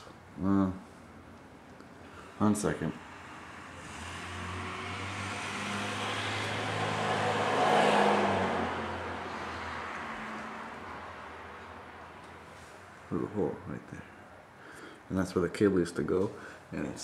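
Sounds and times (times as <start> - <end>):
car passing by: 2.4 - 13.1.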